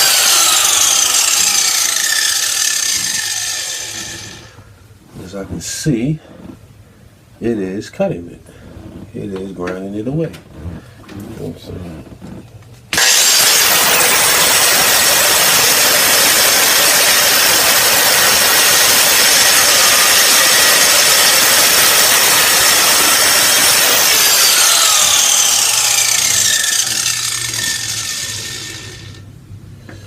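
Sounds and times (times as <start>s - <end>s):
angle grinder cutting steel: 0.0s - 4.6s, 12.9s - 29.3s.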